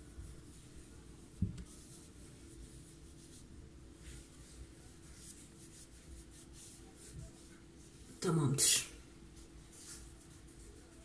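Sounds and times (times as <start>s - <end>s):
cotton pad rubbing on face: 0.0s - 8.1s
low thump: 1.4s - 1.6s.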